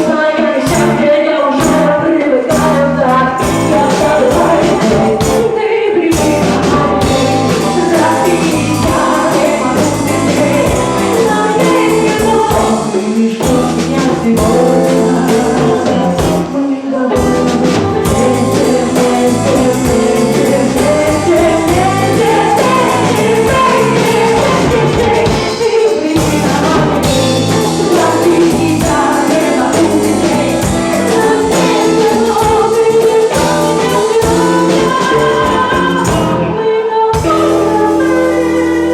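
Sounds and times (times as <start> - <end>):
live band music with singing: 0.0 - 38.9.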